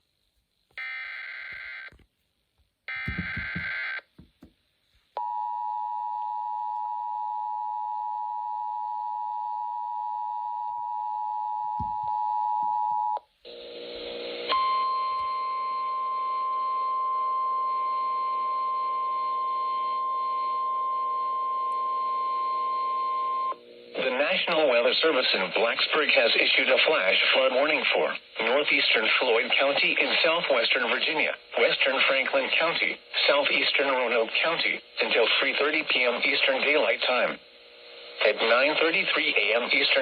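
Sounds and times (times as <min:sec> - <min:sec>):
weather radio alert tone: 0:02.9 - 0:03.9.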